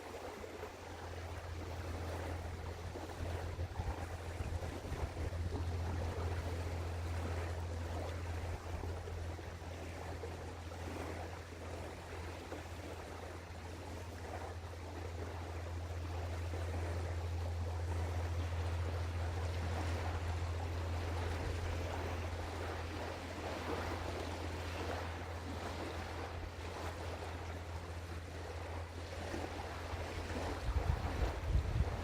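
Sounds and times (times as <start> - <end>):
water noise: 0.0 - 32.0
wind: 0.0 - 32.0
steady low drone: 0.1 - 32.0
wind buffeting microphone: 0.4 - 10.1, 30.2 - 32.0.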